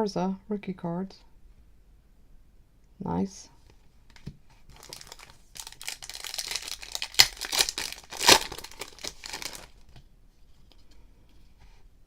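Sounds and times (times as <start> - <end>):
plastic wrapper crinkling and tearing: 4.1 - 9.9.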